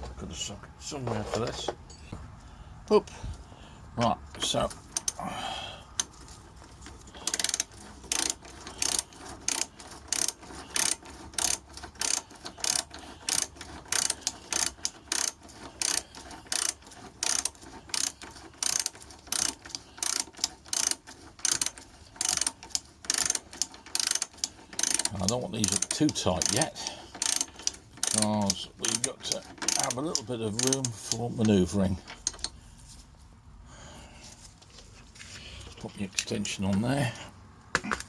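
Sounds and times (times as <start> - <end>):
hand ratchet clicking: 4.4 - 5.2, 6.0 - 32.6.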